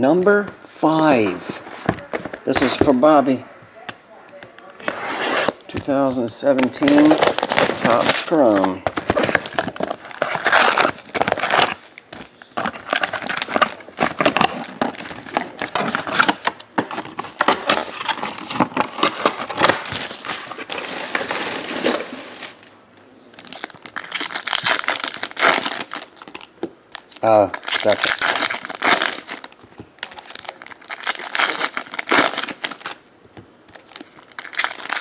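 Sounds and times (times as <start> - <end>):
plastic wrappers crinkling and tearing: 6.6 - 22.6, 23.4 - 33.0, 33.7 - 35.0.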